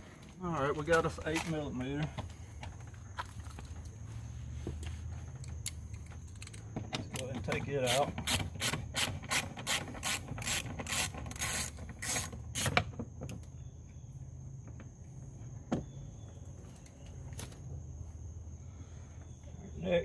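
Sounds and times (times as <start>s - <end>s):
ratchet wrench clicking: 7.8s - 12.8s.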